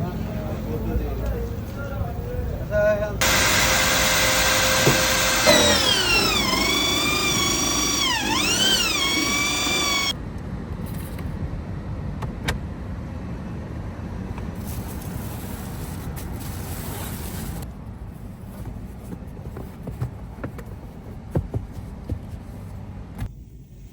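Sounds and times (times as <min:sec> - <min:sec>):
power tool whining: 0:03.2 - 0:10.2.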